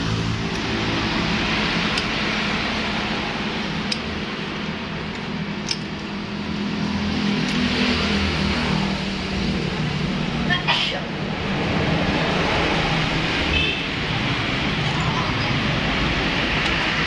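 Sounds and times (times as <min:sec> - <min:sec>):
rushing noise: 0:06.4 - 0:17.0.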